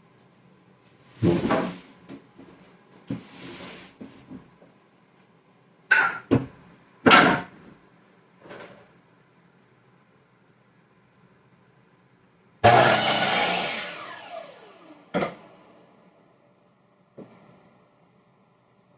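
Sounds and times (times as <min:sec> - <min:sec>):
tools knocking on wooden workbench: 0:06.0 - 0:06.5.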